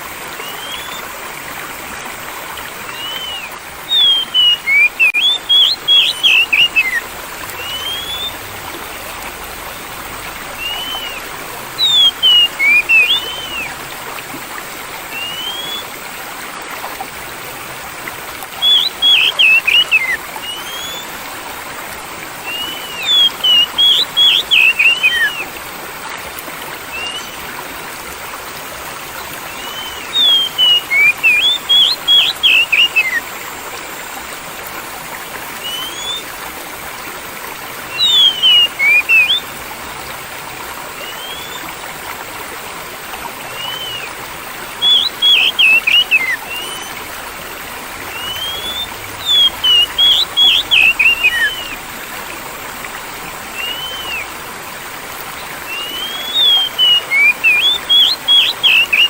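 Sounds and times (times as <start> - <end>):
running water: 0.0 - 59.0
songbird whistling song: 0.4 - 1.1, 2.8 - 8.5, 10.5 - 13.8, 15.1 - 16.0, 18.6 - 21.2, 22.4 - 25.5, 26.9 - 27.4, 29.4 - 33.3, 35.6 - 36.4, 37.9 - 39.5, 40.9 - 41.7, 43.5 - 47.0, 48.1 - 51.8, 53.5 - 54.3, 55.6 - 59.0.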